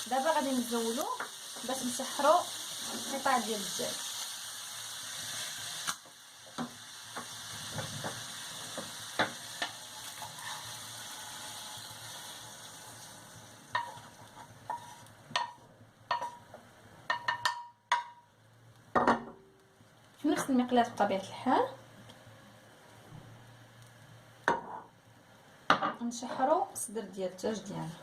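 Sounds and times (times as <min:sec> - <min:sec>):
squid sizzling in oil: 0:00.0 - 0:18.3
utensil scraping a pan: 0:09.6 - 0:11.8, 0:13.8 - 0:15.5
utensil tapping on pan and dishes: 0:13.7 - 0:14.1, 0:14.7 - 0:18.3.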